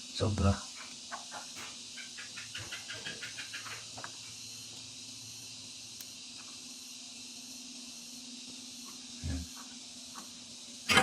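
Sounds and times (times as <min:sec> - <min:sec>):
steady hiss: 0:00.0 - 0:11.0
animal chirps: 0:00.8 - 0:04.5.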